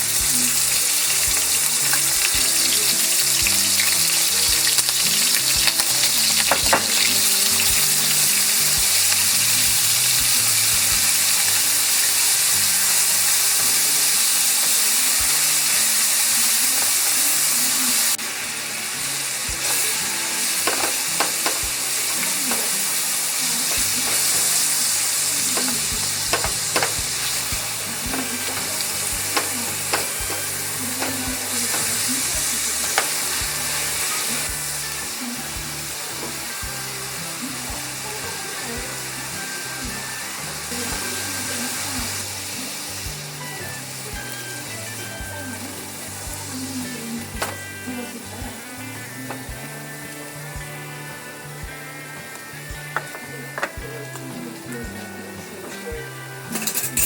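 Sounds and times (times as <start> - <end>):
food sizzling in a frying pan: 0.0 - 57.0
utensil scraping a pan: 19.6 - 34.5.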